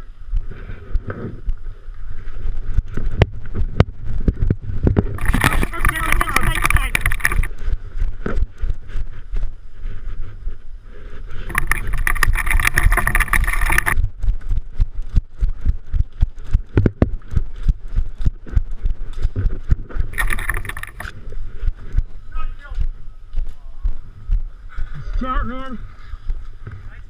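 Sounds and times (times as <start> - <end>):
wind rumble: 0.0 - 27.0
microphone handling noise: 0.4 - 14.9, 15.5 - 22.2.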